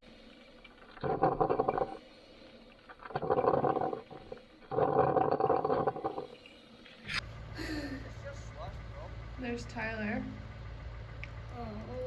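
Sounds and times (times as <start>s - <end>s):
low engine hum: 6.7s - 12.0s.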